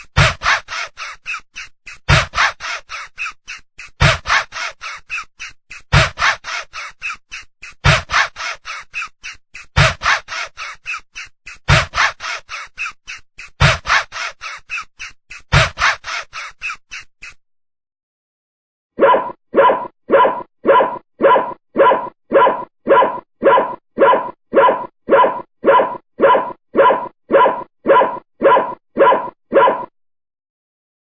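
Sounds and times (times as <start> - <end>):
distant dog barking: 19.0 - 29.9.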